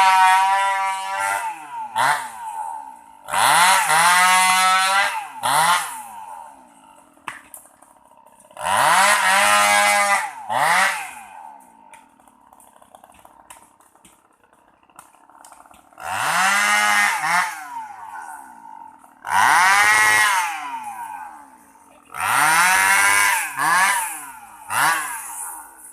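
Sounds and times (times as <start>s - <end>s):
chainsaw idling and revving: 0.0s - 25.9s.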